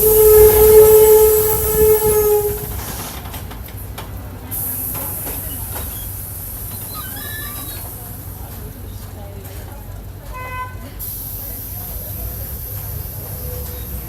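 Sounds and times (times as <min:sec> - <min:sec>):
loud steady horn tone: 0:00.0 - 0:02.8
bus diesel engine running: 0:00.0 - 0:06.9, 0:07.8 - 0:14.0.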